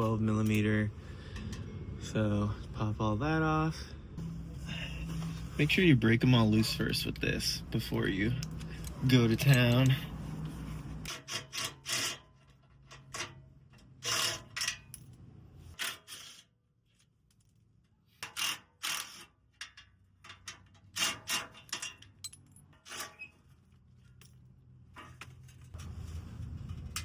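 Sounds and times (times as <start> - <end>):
socket wrench clinking on metal: 8.0 - 10.2, 21.4 - 23.3.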